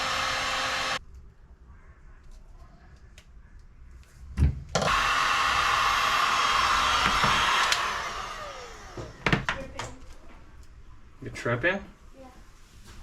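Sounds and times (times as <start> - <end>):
small electric motor whirring: 0.0 - 1.0, 4.9 - 9.2.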